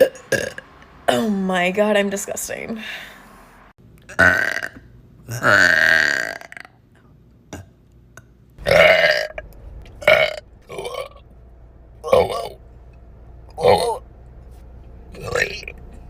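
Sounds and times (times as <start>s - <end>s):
woman burping: 4.1s - 6.7s.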